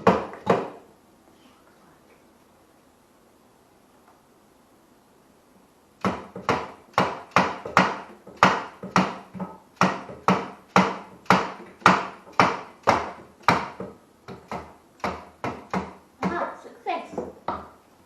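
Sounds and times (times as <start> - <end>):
rubber mallet knocking metal: 6.0 - 16.4.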